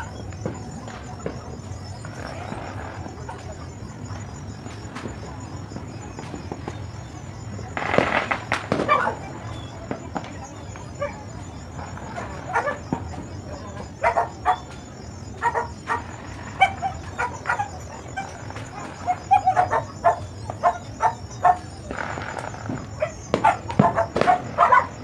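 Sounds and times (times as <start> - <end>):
dog barking: 8.8 - 9.4, 11.9 - 25.0.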